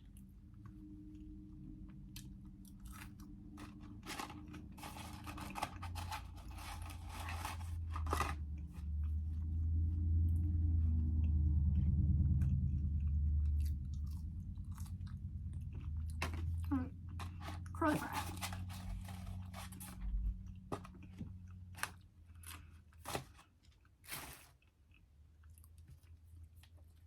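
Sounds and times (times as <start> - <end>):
low steady drone: 0.0 - 5.7, 7.2 - 20.6
chewing and crunching food: 0.0 - 27.0.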